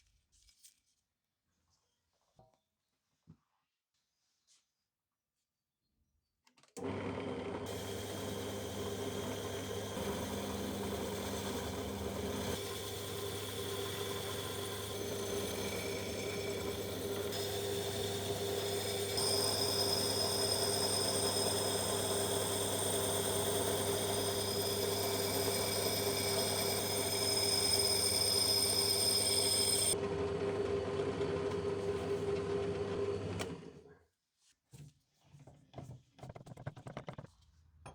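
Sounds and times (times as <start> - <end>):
small power tool humming: 6.8 - 31.9.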